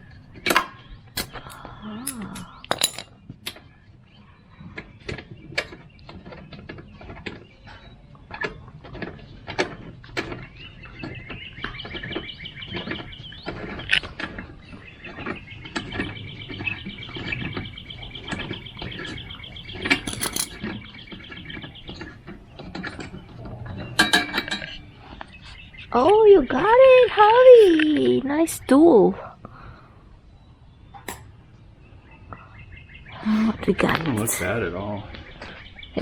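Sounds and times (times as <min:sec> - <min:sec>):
bird trilling: 0:11.3 - 0:27.7.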